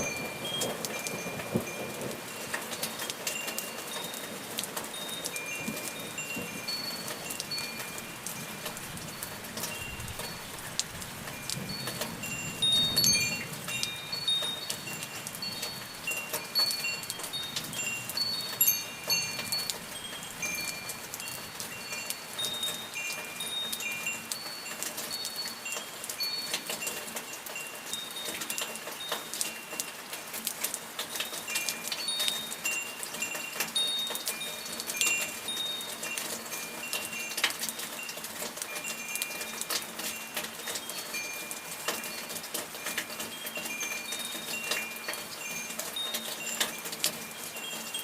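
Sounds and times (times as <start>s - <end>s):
rain falling: 0.0s - 48.0s
wind chimes tinkling: 0.0s - 48.0s.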